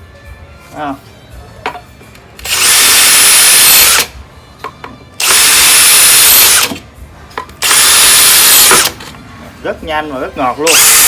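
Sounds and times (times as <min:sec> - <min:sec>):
cordless drill whining: 0:02.4 - 0:04.2, 0:05.2 - 0:06.8, 0:07.6 - 0:09.0, 0:10.6 - 0:11.0.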